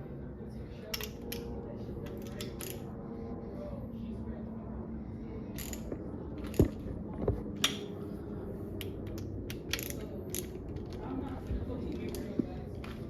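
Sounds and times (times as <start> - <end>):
metal tools clicking on engine: 0.9 - 2.9, 5.6 - 6.7, 8.8 - 11.1
ratchet clicks: 5.6 - 5.9, 9.1 - 10.9.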